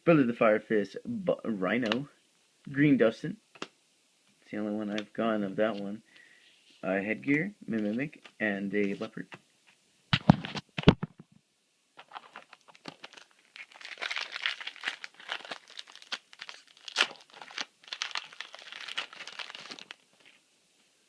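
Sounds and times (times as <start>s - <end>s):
foil wrapper tearing and crinkling: 12.0s - 20.2s.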